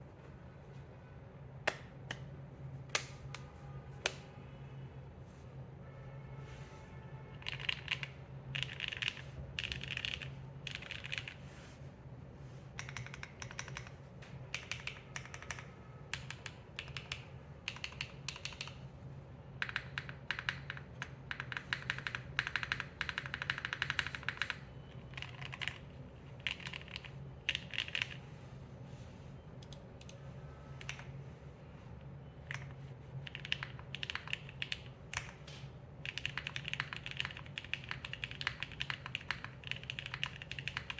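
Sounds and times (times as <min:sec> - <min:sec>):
mechanical keyboard keystroke clacks: 0:07.4 - 0:11.4, 0:14.5 - 0:18.8, 0:32.5 - 0:35.4, 0:36.0 - 0:40.9.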